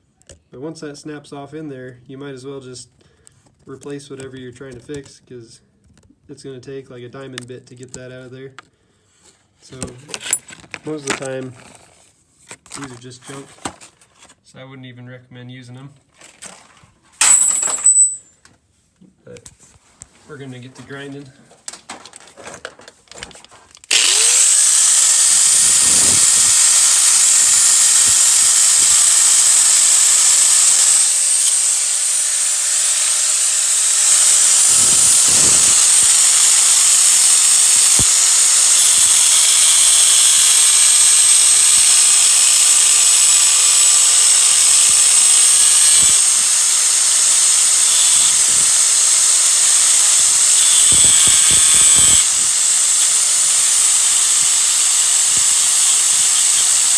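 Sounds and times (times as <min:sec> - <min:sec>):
power tool grinding metal: 0:23.9 - 0:56.9.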